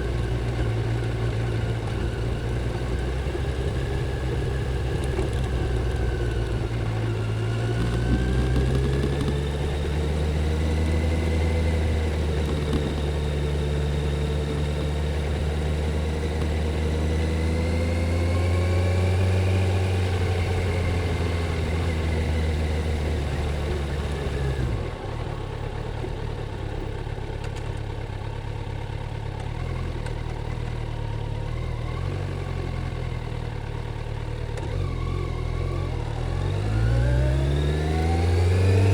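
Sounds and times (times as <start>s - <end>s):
motorcycle engine revving: 0.0s - 25.2s, 34.4s - 38.9s.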